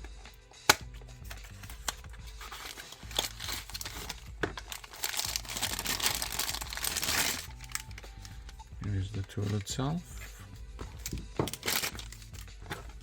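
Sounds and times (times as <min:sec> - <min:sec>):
packaging crinkling and rustling: 0:01.3 - 0:08.5, 0:10.9 - 0:13.0.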